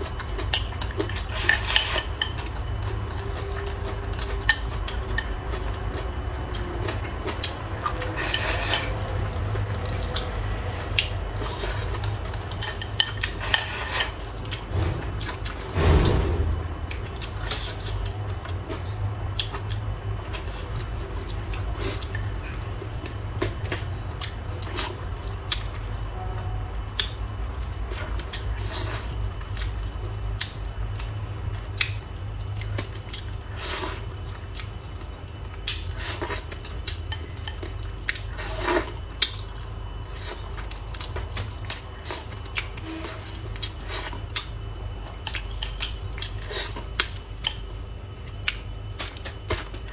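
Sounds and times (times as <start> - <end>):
steady low hum: 0.0 - 33.4.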